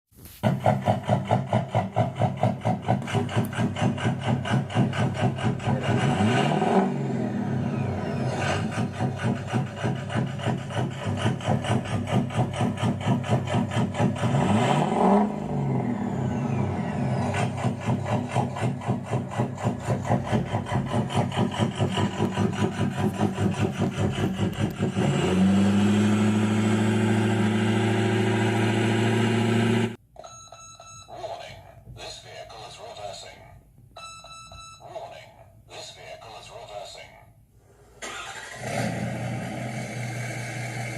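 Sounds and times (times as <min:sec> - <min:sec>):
simulated diesel engine through speaker: 0:00.4 - 0:30.0, 0:38.0 - 0:40.9.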